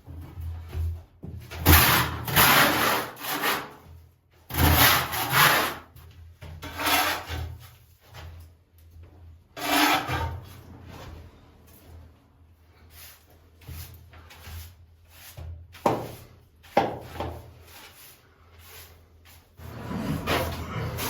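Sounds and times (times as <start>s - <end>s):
rough scraping strokes: 9.6s - 11.6s, 17.5s - 21.0s.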